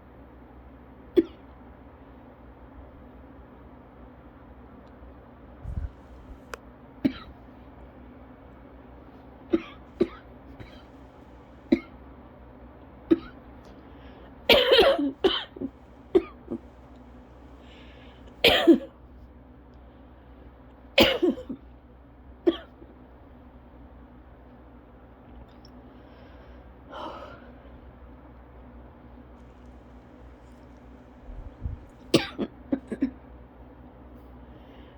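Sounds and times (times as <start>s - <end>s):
person coughing: 1.2s - 1.4s, 7.0s - 7.4s, 9.5s - 10.9s, 13.1s - 13.4s, 14.5s - 16.6s, 18.4s - 18.9s, 21.0s - 21.6s, 32.1s - 33.2s.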